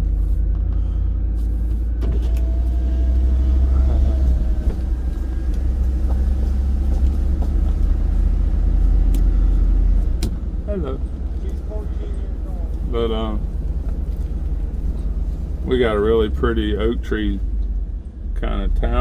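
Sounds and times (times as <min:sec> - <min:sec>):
road rumble: 0:00.0 - 0:19.0
truck engine drone: 0:00.0 - 0:19.0.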